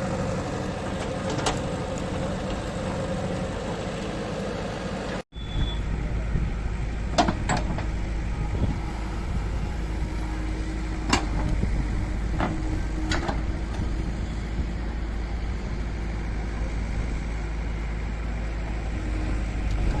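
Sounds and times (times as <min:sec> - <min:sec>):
heavy machinery diesel engine: 0:00.0 - 0:20.0.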